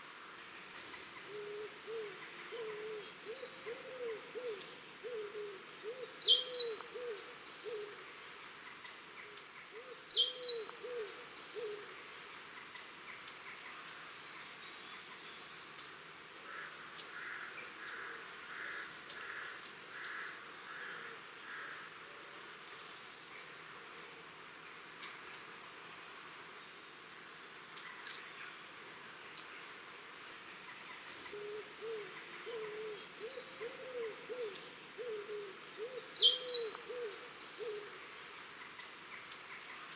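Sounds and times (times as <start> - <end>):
low hooting bird call: 31.2 - 38.0.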